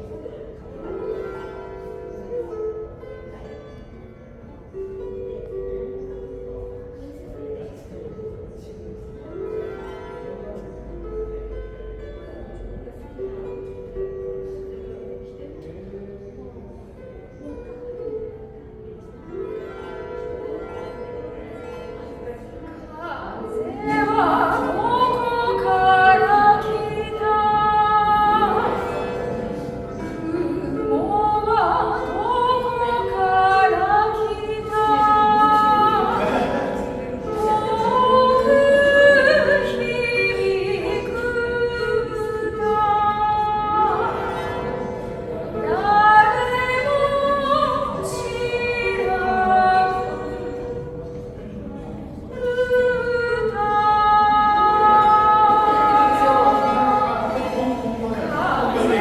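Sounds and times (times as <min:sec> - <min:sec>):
lyre ringing notes: 0:19.2 - 0:59.0.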